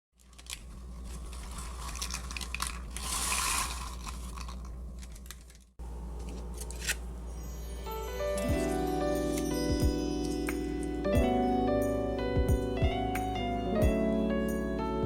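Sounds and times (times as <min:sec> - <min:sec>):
steady low hum: 0:00.6 - 0:07.8.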